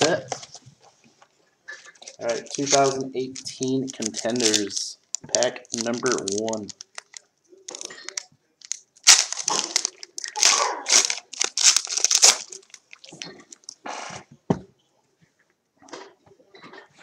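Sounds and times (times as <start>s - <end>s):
cards rustling: 1.8s - 13.7s
foil wrapper tearing and crinkling: 2.0s - 13.7s.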